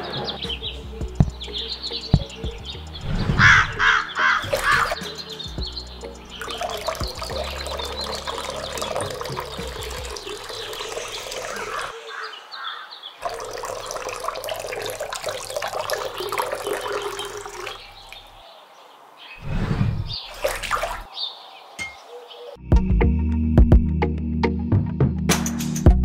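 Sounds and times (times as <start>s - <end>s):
water running and splashing: 4.4s - 12.0s, 13.2s - 18.4s, 20.2s - 21.1s.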